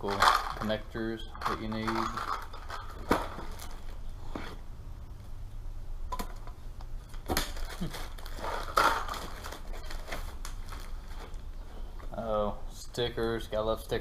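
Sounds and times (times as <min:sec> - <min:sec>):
plastic bags crinkling: 0:00.0 - 0:04.0, 0:07.4 - 0:11.4.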